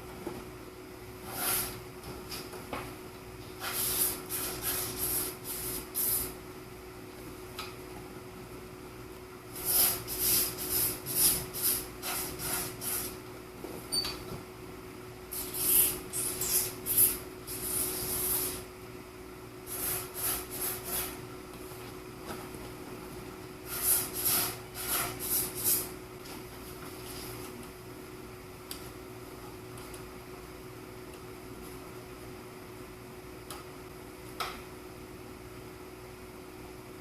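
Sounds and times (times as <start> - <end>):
faint steady hum: 0.0 - 37.0.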